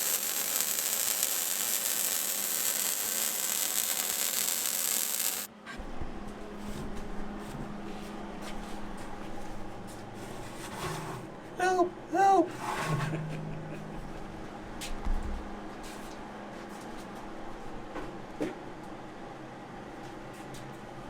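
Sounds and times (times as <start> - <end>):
welding arc crackling hiss: 0.0 - 5.5.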